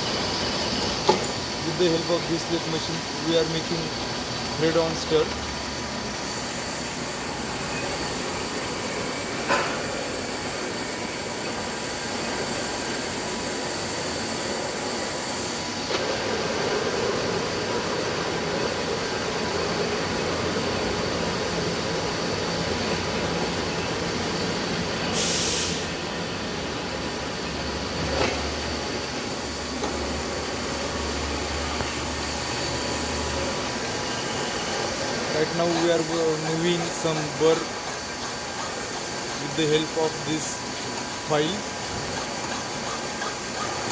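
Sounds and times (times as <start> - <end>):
lathe running with whining tones: 0.0 - 43.9
brief hiss: 25.2 - 25.9.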